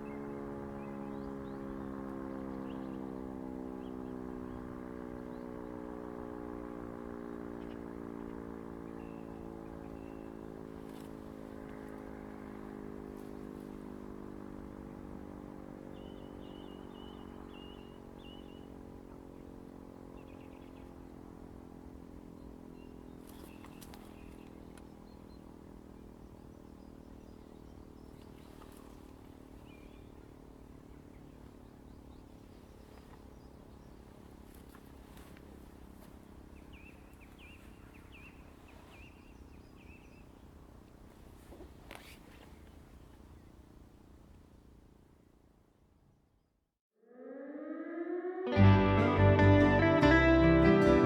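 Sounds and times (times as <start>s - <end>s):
faint bird chirps: 15.9s - 18.8s
siren winding down: 47.1s - 51.0s.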